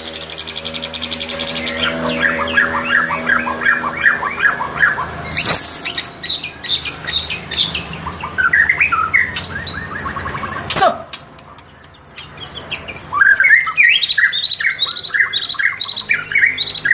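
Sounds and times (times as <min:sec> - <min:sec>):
bird singing loudly: 0:00.0 - 0:16.9
harsh cough-like bird calls: 0:10.6 - 0:11.2.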